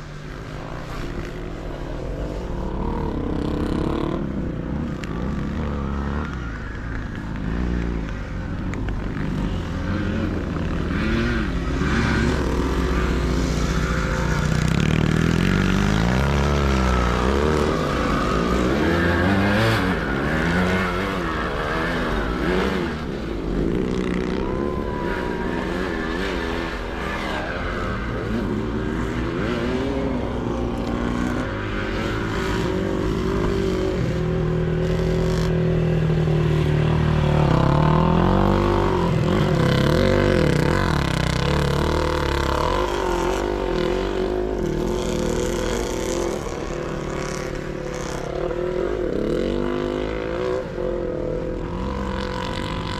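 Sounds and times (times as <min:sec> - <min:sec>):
motorcycles racing and revving: 0:00.0 - 0:52.9.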